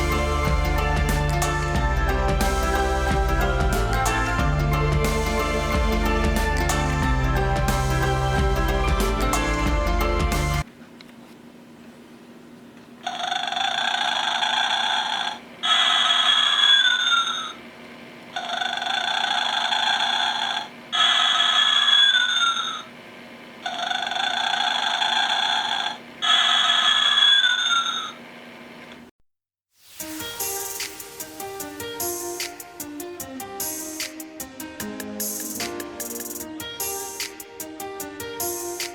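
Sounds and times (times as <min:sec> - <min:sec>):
toy recorded snoring: 0:13.1 - 0:17.4, 0:18.4 - 0:22.6, 0:23.7 - 0:28.2.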